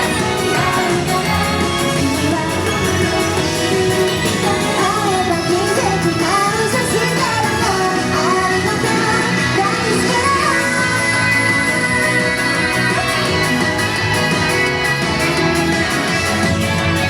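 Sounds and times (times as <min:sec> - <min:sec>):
group singing a pop song: 0:00.0 - 0:17.0
loud backing music: 0:00.0 - 0:17.0.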